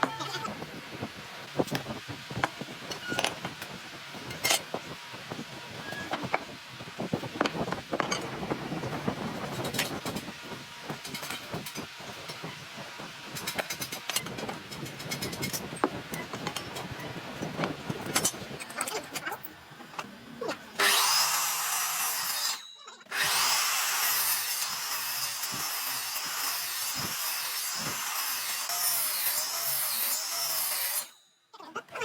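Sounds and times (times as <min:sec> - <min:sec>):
power tool working wood: 0:20.4 - 0:31.1.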